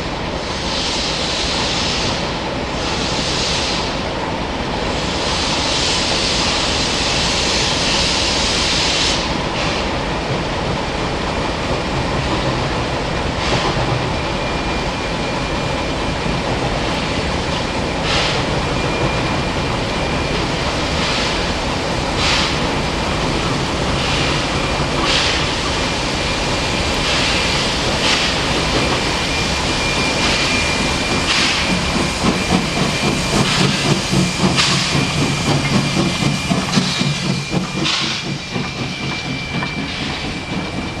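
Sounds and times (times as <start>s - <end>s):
steam hissing: 0.4s - 4.0s, 4.9s - 10.0s, 17.8s - 41.0s
locomotive exhaust puffs: 30.0s - 41.0s.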